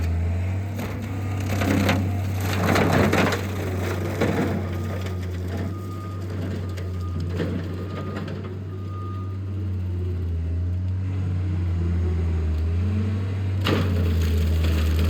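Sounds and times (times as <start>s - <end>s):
skid steer engine droning: 0.0s - 15.0s
wood splintering: 13.6s - 15.0s.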